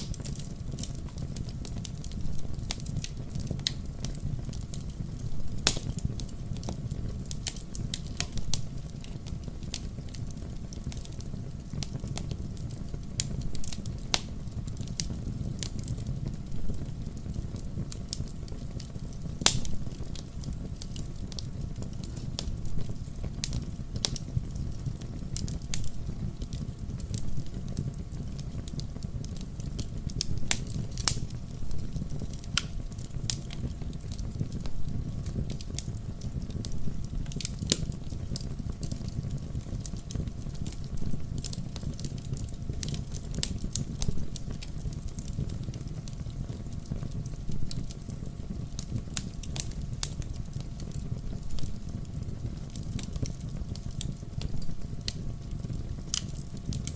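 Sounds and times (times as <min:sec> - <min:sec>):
fire crackling in fireplace: 0:00.0 - 0:56.9.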